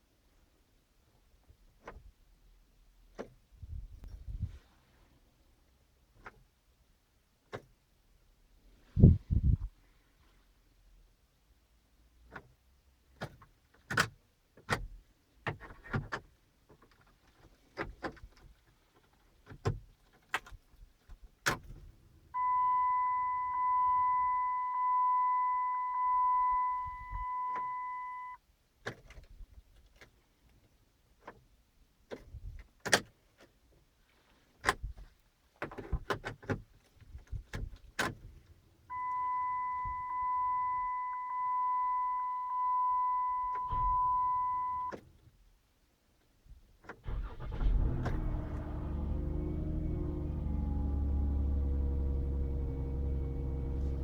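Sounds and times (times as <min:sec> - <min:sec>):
high electronic warning chime: 0:22.4 - 0:28.4, 0:39.0 - 0:44.9.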